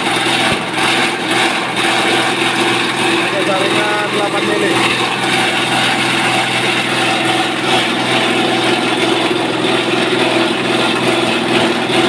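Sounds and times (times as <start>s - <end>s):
chopping machine motor drone: 0.0s - 12.0s.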